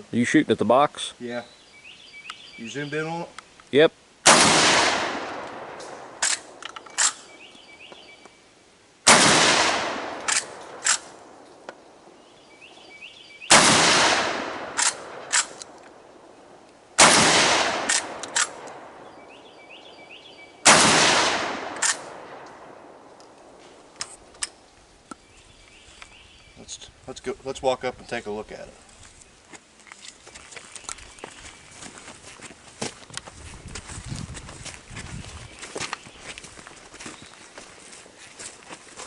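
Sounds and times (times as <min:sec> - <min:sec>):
shotgun blasts with echo: 0:04.2 - 0:07.2, 0:09.1 - 0:11.2, 0:13.5 - 0:15.6, 0:17.0 - 0:19.0, 0:20.6 - 0:23.0.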